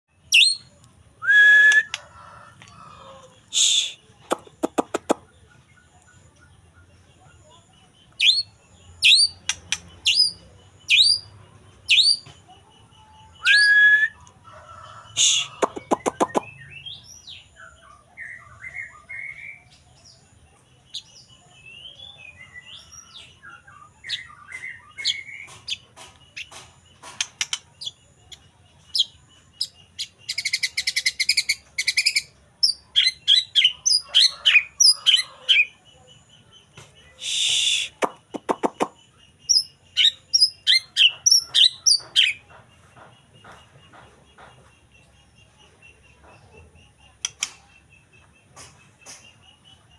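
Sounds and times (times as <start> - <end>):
bird singing whistled phrases: 0.4 - 2.0, 3.6 - 4.0, 13.4 - 14.3, 37.2 - 38.1.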